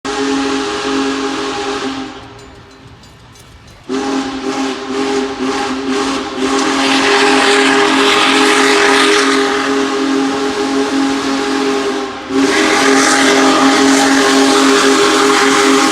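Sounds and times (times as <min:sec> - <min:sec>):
rush of passing train: 0:00.1 - 0:15.9
steam hiss: 0:00.1 - 0:15.9
steam locomotive chime whistle: 0:00.1 - 0:15.9.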